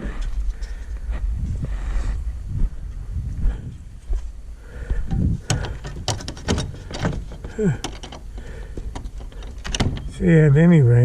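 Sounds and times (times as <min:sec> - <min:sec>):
clicks and knocks of hardware: 0:05.1 - 0:10.2.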